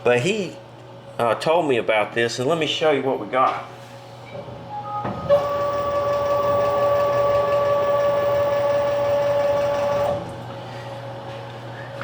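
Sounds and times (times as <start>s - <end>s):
stepper motor whine: 4.8s - 10.3s
motor click: 5.3s - 10.3s.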